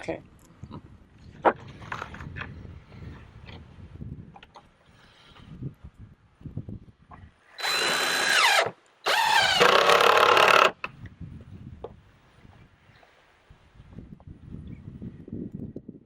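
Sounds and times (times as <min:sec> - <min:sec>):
power drill motor whine: 0:07.6 - 0:10.8.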